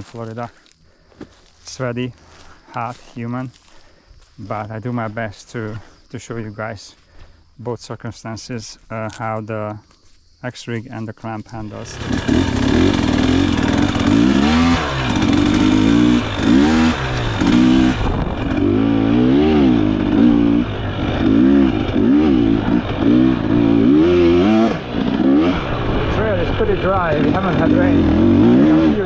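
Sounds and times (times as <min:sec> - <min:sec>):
dirt bike engine revving: 0:11.6 - 0:29.0.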